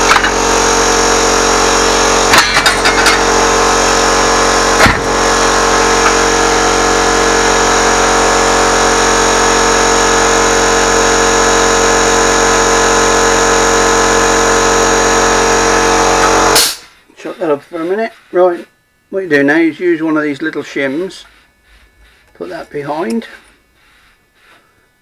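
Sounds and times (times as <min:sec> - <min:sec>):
machine tool motor humming: 0:00.0 - 0:24.6
sharp knock: 0:16.6 - 0:16.9.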